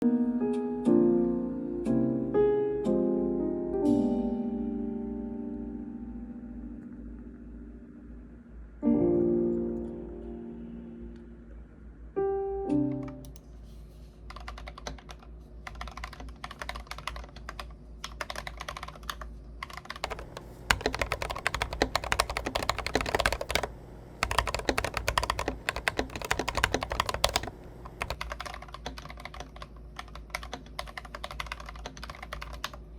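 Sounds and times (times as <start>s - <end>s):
mechanical keyboard typing: 14.3s - 32.9s.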